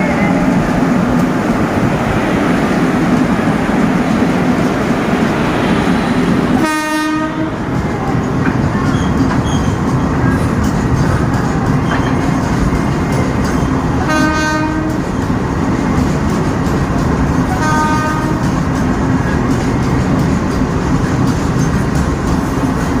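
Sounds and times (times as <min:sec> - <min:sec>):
train rumbling: 0:00.0 - 0:23.0
train horn blasts: 0:06.6 - 0:07.6, 0:14.0 - 0:15.0, 0:17.6 - 0:18.6.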